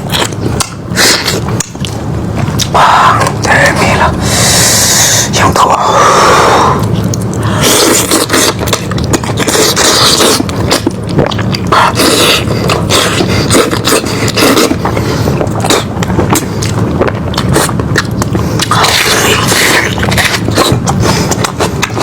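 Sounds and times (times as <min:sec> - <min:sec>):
chewing and tearing meat: 0:00.0 - 0:03.4, 0:06.6 - 0:22.0
wet clicks and crunches: 0:00.1 - 0:03.6.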